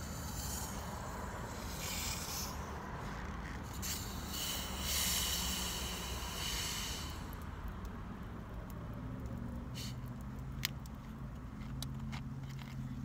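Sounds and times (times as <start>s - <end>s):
soda bottle hissing: 0.0s - 7.4s
steady low hum: 0.0s - 8.7s.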